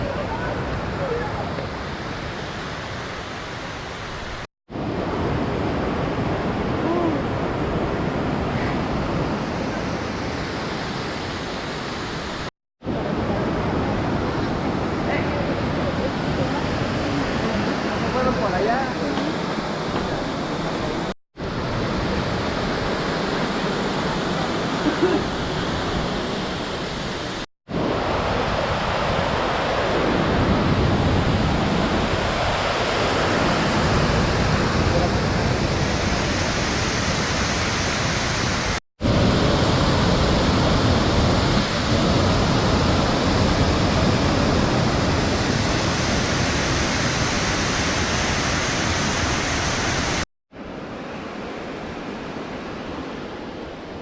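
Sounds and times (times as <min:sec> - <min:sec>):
waterfall roaring: 0:09.0 - 0:50.2.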